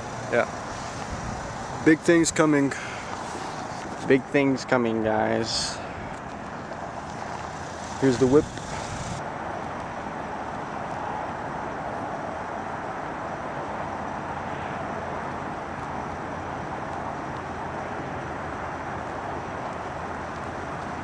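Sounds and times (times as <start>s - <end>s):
car engine and road noise: 0.0s - 21.0s.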